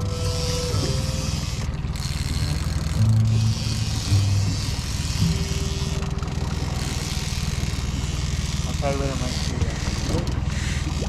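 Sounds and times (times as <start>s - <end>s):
boat motor humming: 0.0s - 11.0s.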